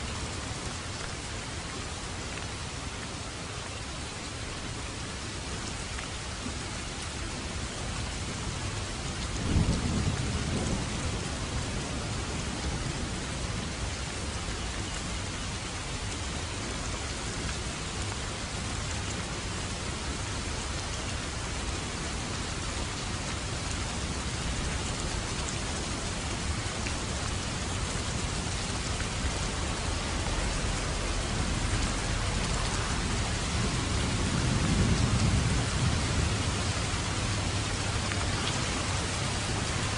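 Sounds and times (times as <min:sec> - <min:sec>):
steady rain falling: 0:00.0 - 0:39.9
thunder rumbling: 0:09.4 - 0:13.4, 0:27.6 - 0:39.7.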